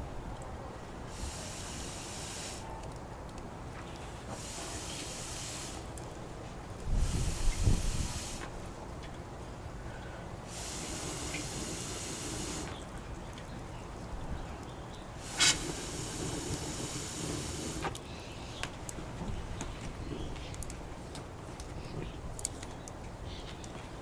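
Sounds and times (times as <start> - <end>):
fire crackling: 0.0 - 24.0
wood fire hissing: 0.8 - 13.0, 15.1 - 22.9
sharp pop from fire: 15.3 - 18.0.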